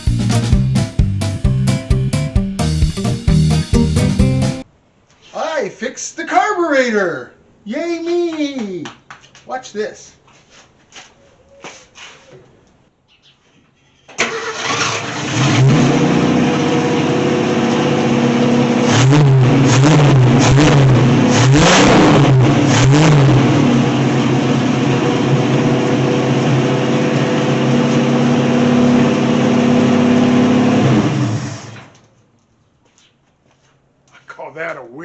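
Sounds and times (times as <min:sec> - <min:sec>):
car engine starting and revving: 0:14.2 - 0:31.9.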